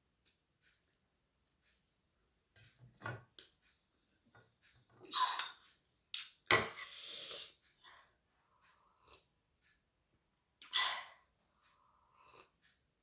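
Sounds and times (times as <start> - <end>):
noisy breath or slurp: 6.8 - 7.6, 12.0 - 12.6.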